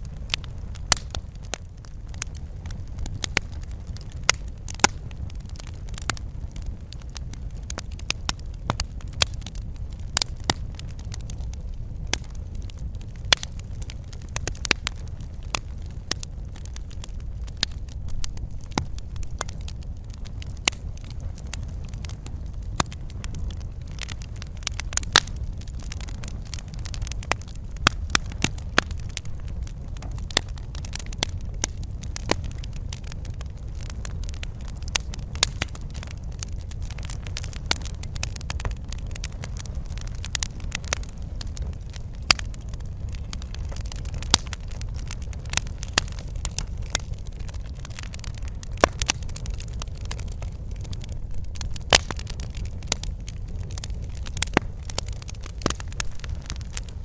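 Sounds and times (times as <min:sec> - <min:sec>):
fire popping and snapping: 0:00.0 - 0:57.0
low rumble of burning: 0:00.0 - 0:57.0.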